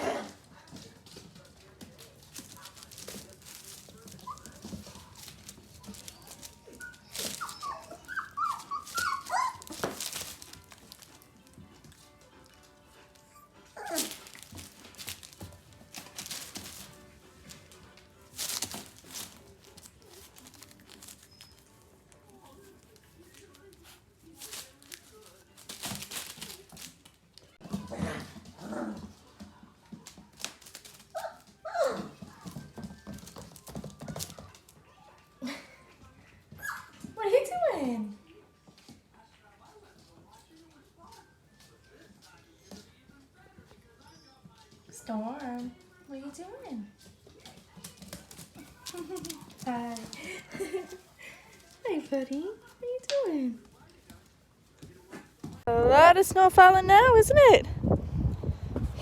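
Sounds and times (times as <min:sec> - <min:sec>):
puppies shuffling and clicking: 0:00.3 - 0:57.6
puppies whimpering: 0:04.1 - 0:10.8, 0:13.0 - 0:14.8, 0:31.1 - 0:33.5, 0:36.4 - 0:37.0
puppy squeaks and yelps: 0:06.0 - 0:09.8, 0:13.3 - 0:14.1, 0:36.5 - 0:37.0.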